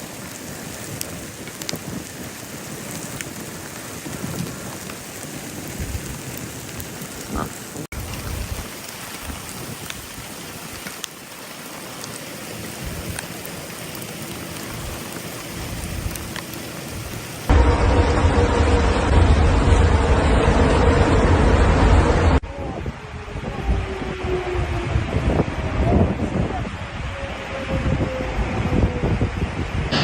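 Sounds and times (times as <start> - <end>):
heavy rain pattering: 0.0 - 22.4
low rumbles: 17.0 - 25.9.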